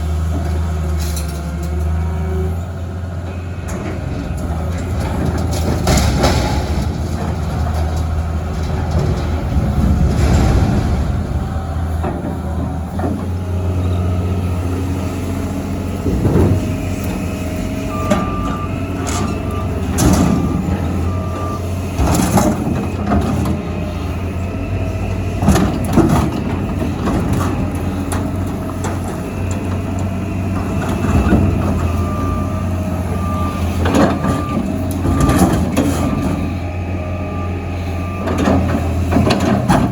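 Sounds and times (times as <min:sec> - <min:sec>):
heavy machinery engine running: 0:00.0 - 0:39.9
metal clanks and knocks: 0:03.7 - 0:13.4
reversing alarm beeping: 0:16.6 - 0:21.9, 0:31.1 - 0:39.2.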